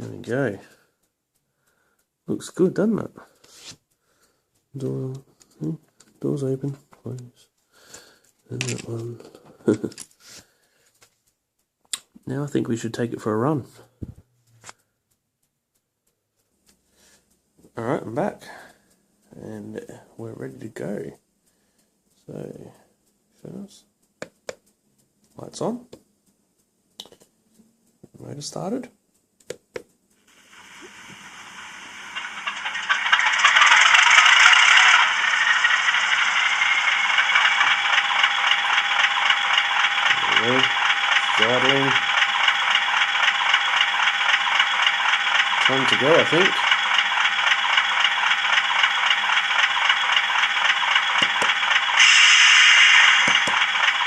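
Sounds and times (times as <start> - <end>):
loud hiss: 30.2 - 43.7, 49.1 - 54.0
diesel engine sound winding up: 30.3 - 54.0.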